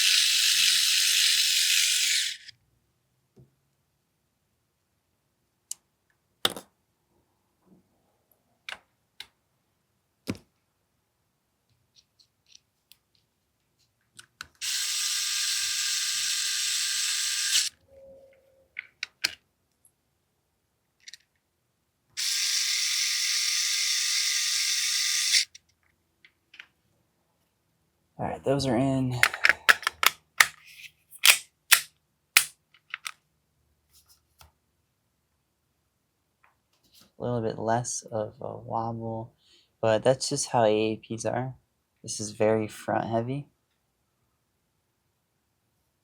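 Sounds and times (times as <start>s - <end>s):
electric screwdriver whirring: 0.0s - 2.5s, 14.6s - 17.7s, 22.2s - 25.5s.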